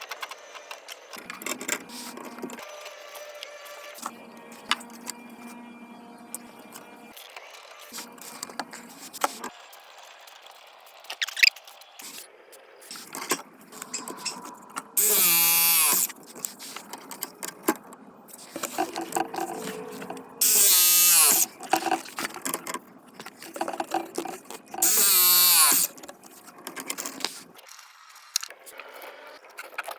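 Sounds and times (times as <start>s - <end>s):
power tool motor running: 15.0s - 16.2s, 20.4s - 21.6s, 24.8s - 26.0s.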